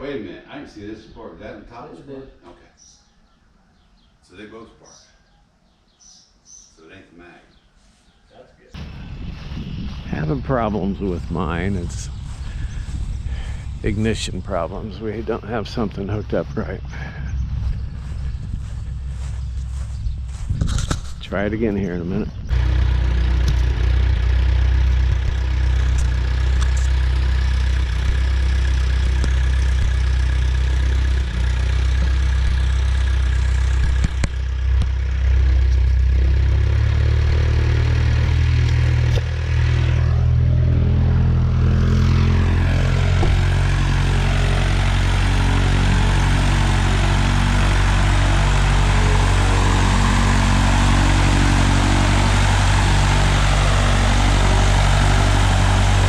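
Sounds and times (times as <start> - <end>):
light aircraft engine and propeller: 8.8 - 56.0.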